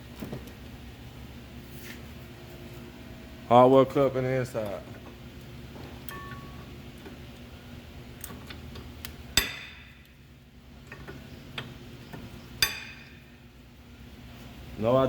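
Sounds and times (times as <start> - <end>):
ringing metallic clanks: 9.4 - 10.1, 12.6 - 13.4.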